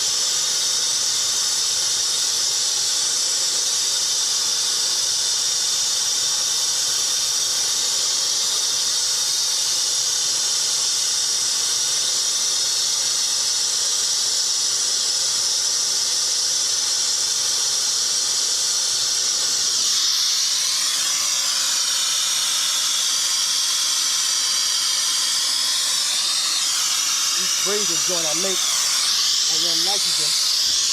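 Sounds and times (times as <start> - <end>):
torch hissing: 0.0 - 30.9
sweeping whistle-like tone: 19.7 - 30.9.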